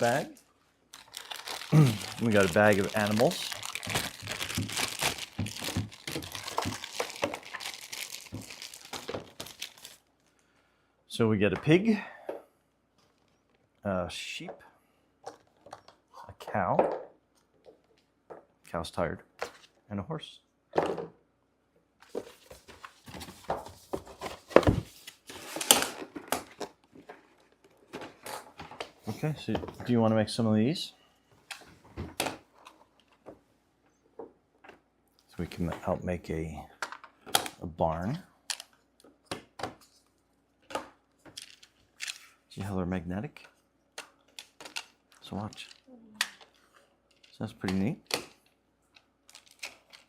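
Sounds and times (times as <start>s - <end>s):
plastic bag crinkling: 0.0s - 10.3s, 49.2s - 50.0s
packaging rustling: 0.0s - 10.4s, 49.2s - 50.0s.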